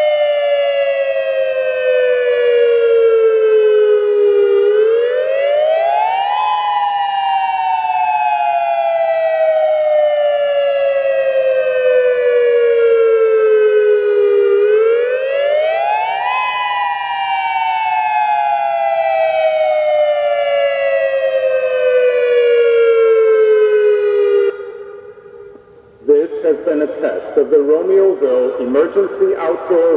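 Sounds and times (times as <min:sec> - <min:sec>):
dual-tone warning siren wail: 0:00.0 - 0:29.9.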